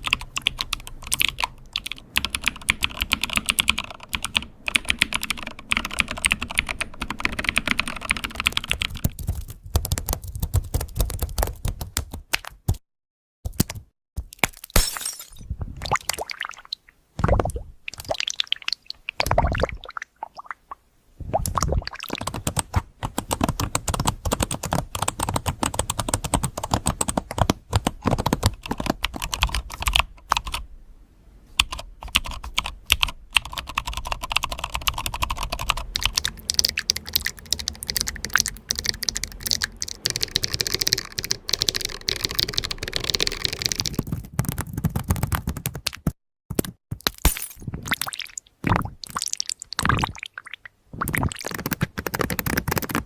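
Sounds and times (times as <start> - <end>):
fast keyboard typing: 0.0 - 12.8, 22.0 - 30.6, 31.6 - 46.8, 51.2 - 53.0.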